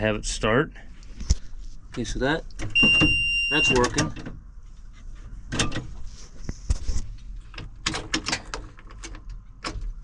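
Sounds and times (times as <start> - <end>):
sharp clicks and knocks of controls: 1.9 - 4.4, 7.3 - 10.0.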